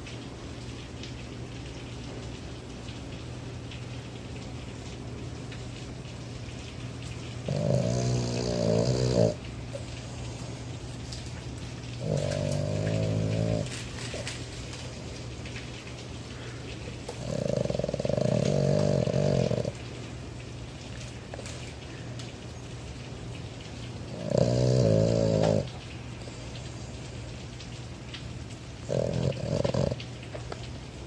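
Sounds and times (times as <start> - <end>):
dog snoring: 7.4 - 10.0, 12.0 - 14.4, 17.2 - 19.8, 24.1 - 25.8, 28.8 - 30.0.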